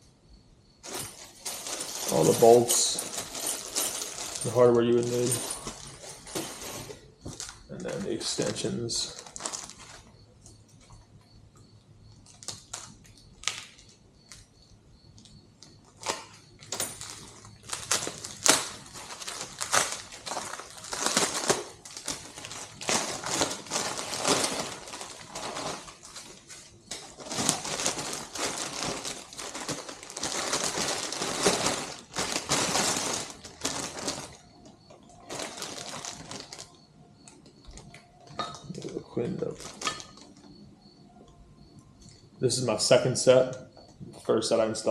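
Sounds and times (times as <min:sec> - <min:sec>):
parts rustling and scraping: 0:00.8 - 0:11.1, 0:15.2 - 0:40.5.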